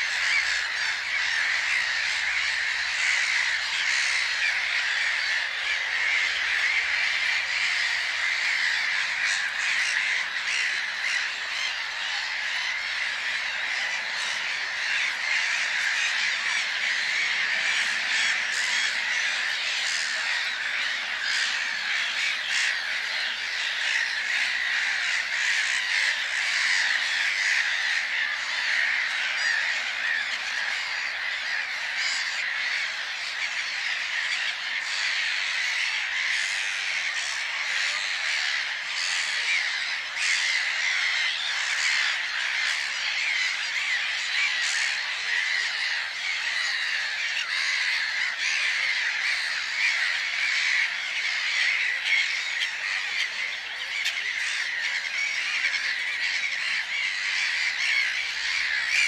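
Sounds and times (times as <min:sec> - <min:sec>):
flock of birds calling: 0:00.0 - 0:59.0.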